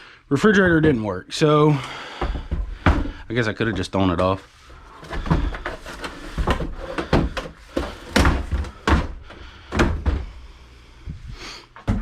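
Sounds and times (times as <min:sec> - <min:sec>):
computer case thunks and knocks: 0:06.4 - 0:10.3.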